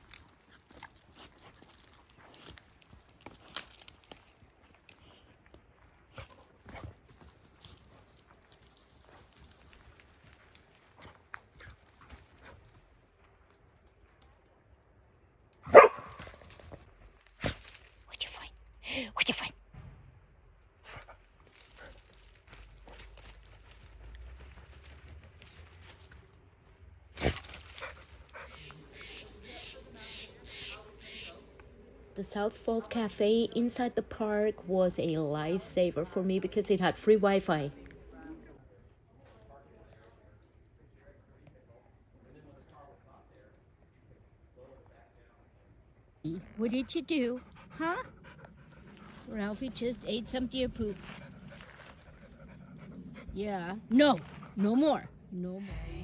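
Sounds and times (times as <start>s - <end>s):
dog rustling and clicking: 0.0s - 5.3s, 20.9s - 26.3s, 27.2s - 28.6s
low rumble: 55.7s - 56.0s.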